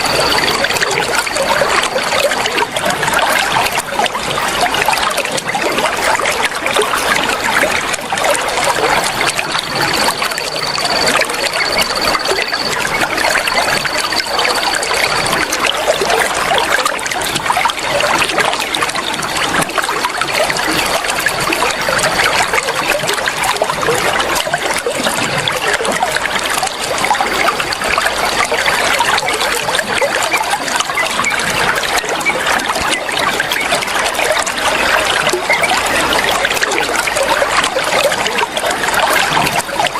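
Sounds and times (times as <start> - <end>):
water trickling and splashing: 0.0 - 39.9
faint high steady tone: 7.2 - 16.9.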